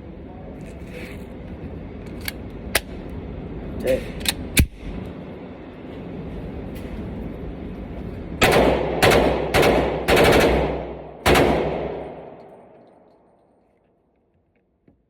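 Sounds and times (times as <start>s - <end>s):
gunshot echo: 8.4s - 12.5s
pistol shots: 8.4s - 12.7s.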